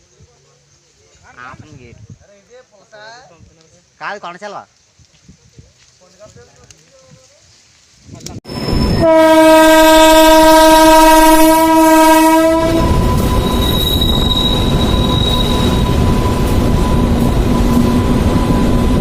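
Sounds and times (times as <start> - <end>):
train rumbling past: 8.4 - 19.0
train horn blast: 8.9 - 19.0.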